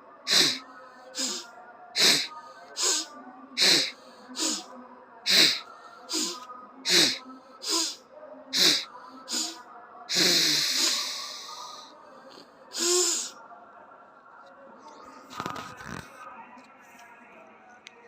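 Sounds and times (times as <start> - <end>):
person sneezing: 0.3 - 1.4, 2.0 - 4.7, 5.3 - 8.0, 8.6 - 11.8, 12.7 - 13.4.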